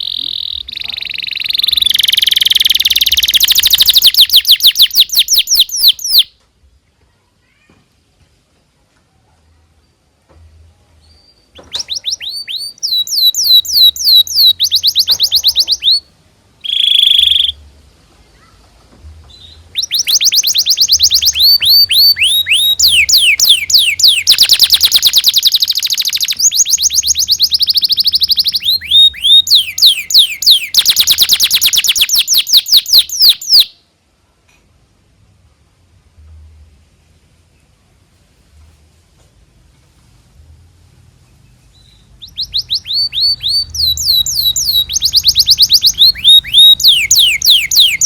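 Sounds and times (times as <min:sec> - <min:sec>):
canary singing: 0:00.0 - 0:06.4, 0:11.0 - 0:17.7, 0:19.3 - 0:33.8, 0:41.4 - 0:48.0.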